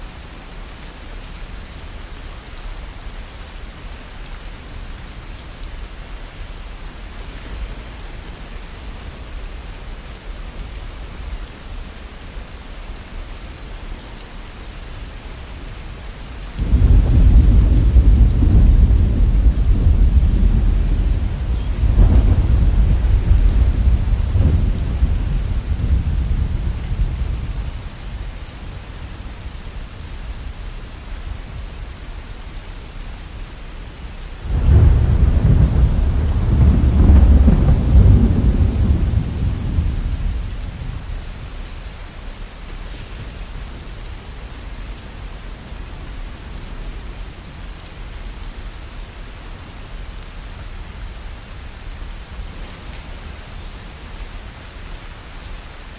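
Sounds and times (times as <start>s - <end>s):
heavy rain falling: 0.0s - 55.9s
rolling thunder: 16.6s - 28.3s, 34.4s - 41.2s.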